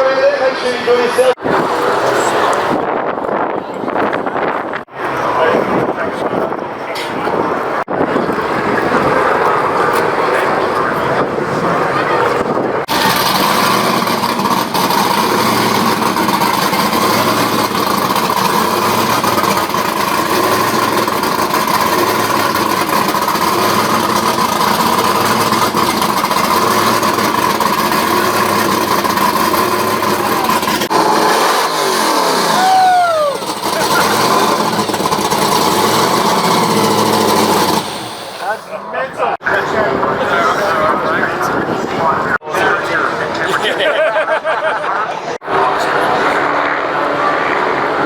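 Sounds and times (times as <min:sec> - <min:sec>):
car engine revving high: 0:12.9 - 0:38.6, 0:45.4 - 0:48.0.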